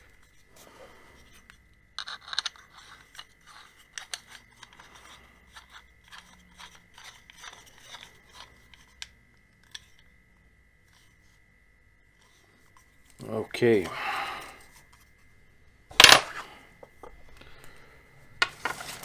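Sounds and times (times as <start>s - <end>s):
small hardware parts clicking: 16.0s - 16.4s.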